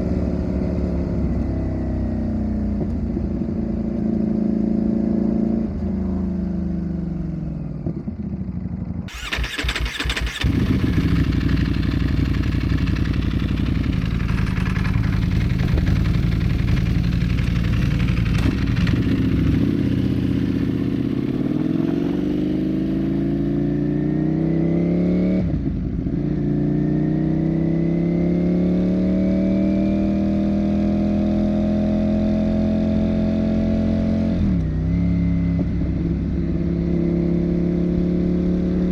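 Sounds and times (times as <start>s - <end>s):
motorcycle engine revving: 9.1s - 38.9s.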